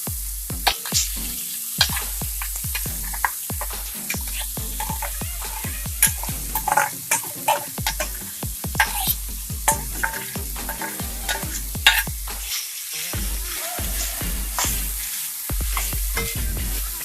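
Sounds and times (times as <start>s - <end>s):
vegetables sizzling in a pan: 0.0s - 17.0s
spoon scraping and knocking pan: 0.6s - 12.6s, 13.8s - 16.6s.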